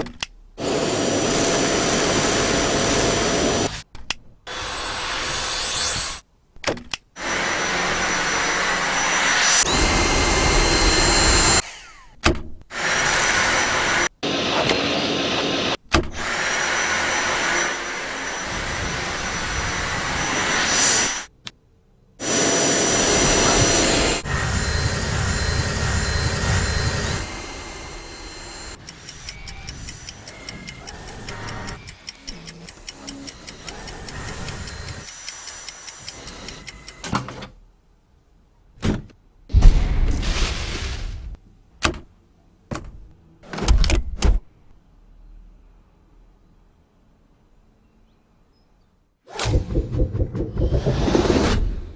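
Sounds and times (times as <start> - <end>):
stick vacuum motor whine: 7.2 - 12.2, 22.2 - 37.0.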